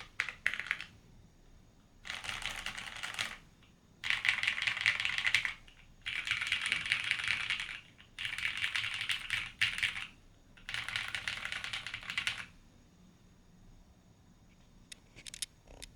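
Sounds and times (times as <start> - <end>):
rapid keyboard key clacks: 0.0 - 0.9, 2.1 - 3.4, 4.0 - 12.5.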